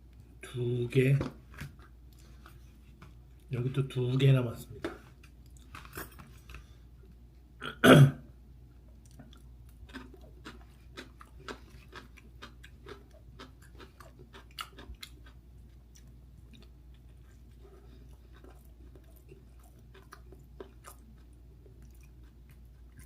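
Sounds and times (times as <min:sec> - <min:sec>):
person chewing: 0:05.2 - 0:07.1, 0:08.9 - 0:23.0.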